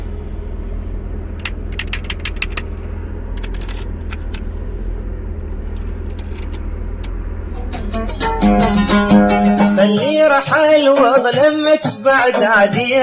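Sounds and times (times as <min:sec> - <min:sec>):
low rumble of moving car: 0:00.0 - 0:13.0
sharp clicks and light rattles: 0:01.4 - 0:04.5, 0:05.4 - 0:07.2.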